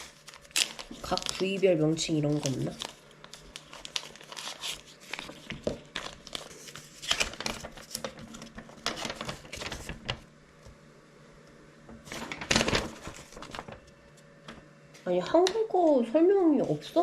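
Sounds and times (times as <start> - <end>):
packaging rustling and crinkling: 0.0 - 10.3, 12.0 - 14.2.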